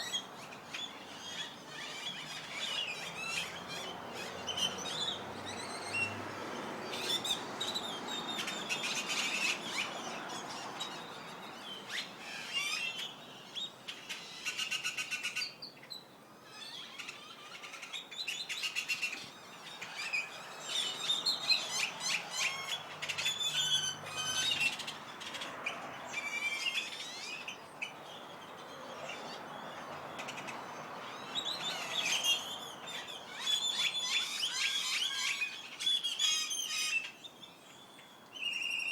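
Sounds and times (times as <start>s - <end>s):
flock of birds chirping: 0.0s - 38.9s.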